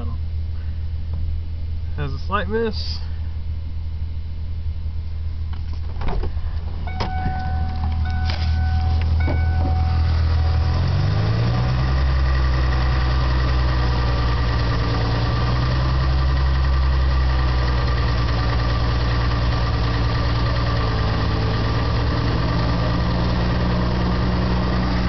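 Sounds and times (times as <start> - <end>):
car engine running with knock: 5.5 - 25.0.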